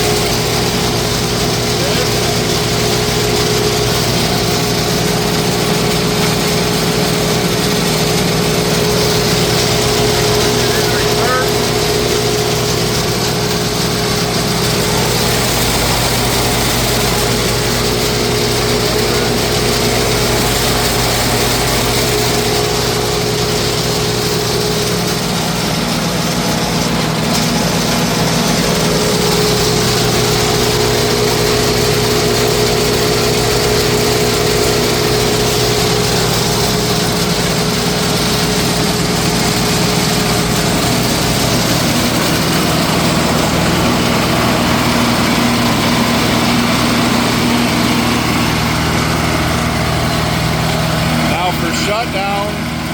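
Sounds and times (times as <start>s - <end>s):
wood chipper running: 0.0s - 52.9s.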